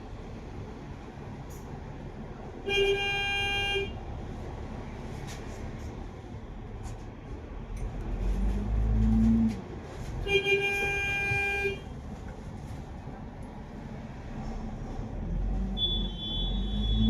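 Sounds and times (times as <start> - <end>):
bus engine: 0.0 - 17.0
road noise: 0.0 - 17.0
vehicle horn honking: 10.3 - 11.9, 15.8 - 17.0.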